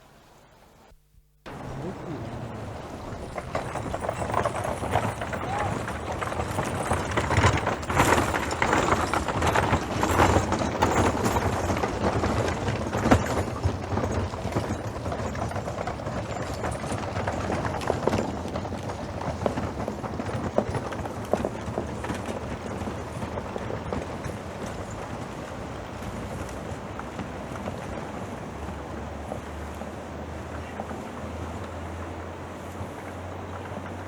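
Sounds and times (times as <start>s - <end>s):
horse hooves clopping: 1.5s - 34.0s.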